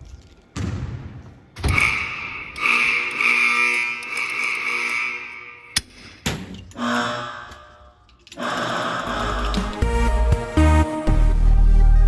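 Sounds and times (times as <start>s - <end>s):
deep bass: 9.6s - 12.0s.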